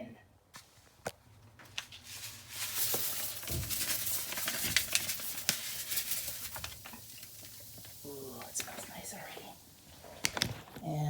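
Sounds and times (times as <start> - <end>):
powder granules pouring: 1.9 - 10.7
small clicks and knocks: 10.2 - 10.8.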